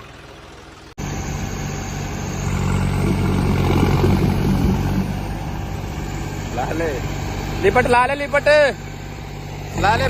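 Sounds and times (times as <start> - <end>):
tractor diesel engine running: 0.0 - 10.0.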